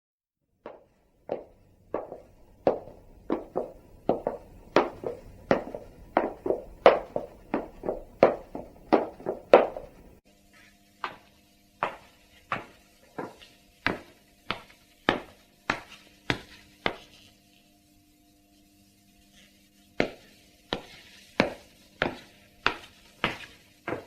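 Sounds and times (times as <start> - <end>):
faint steady hum: 0.6 - 24.0
hard shoes clicking on floor: 0.7 - 10.2, 11.0 - 17.1, 20.0 - 24.0.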